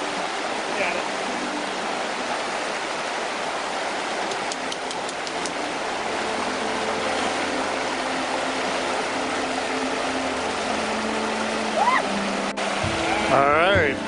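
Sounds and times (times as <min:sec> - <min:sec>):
river flowing swiftly: 0:00.0 - 0:14.0
faint high ticks: 0:04.2 - 0:05.6.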